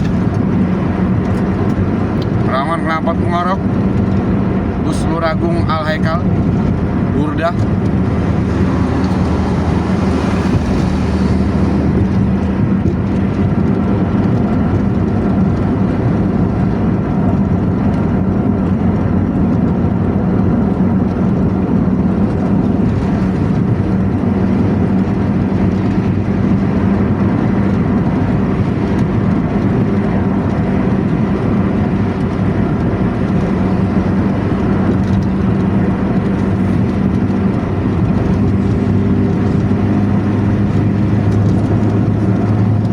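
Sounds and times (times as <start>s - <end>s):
bus exhaust deep drone: 0.0s - 42.9s.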